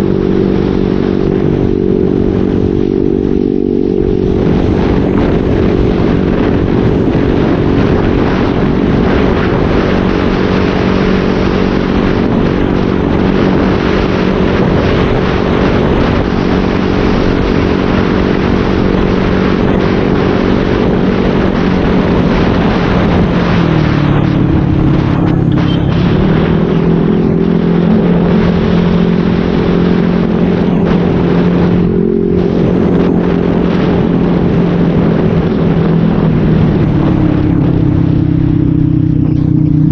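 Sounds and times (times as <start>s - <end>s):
motorcycle engine running: 0.0s - 39.9s
wind on microphone: 0.0s - 39.9s.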